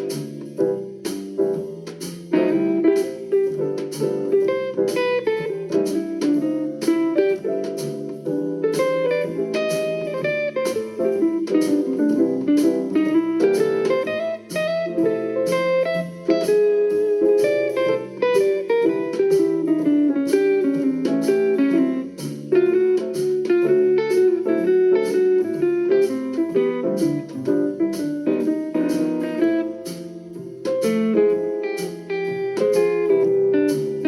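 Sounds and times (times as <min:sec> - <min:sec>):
plucked guitar music from speaker: 0:01.6 - 0:34.0.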